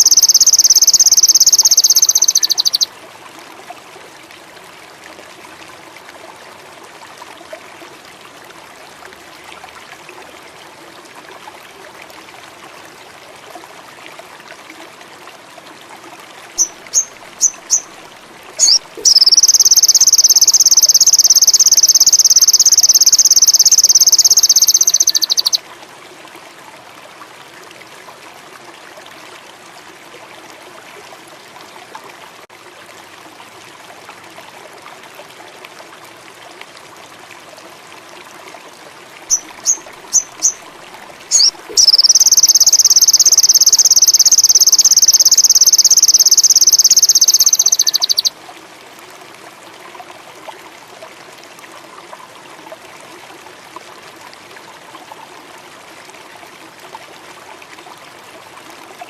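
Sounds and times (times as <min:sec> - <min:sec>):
insects: 0:00.0 - 0:02.9, 0:18.6 - 0:25.6, 0:41.3 - 0:48.3
songbird singing high trill: 0:00.0 - 0:02.9, 0:16.6 - 0:17.9, 0:18.6 - 0:25.6, 0:39.3 - 0:40.6, 0:41.3 - 0:48.3
trickling water: 0:00.0 - 0:59.0.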